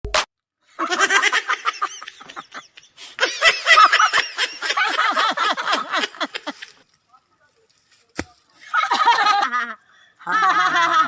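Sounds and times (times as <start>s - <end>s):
laughter: 0.8s - 6.8s, 8.6s - 11.0s.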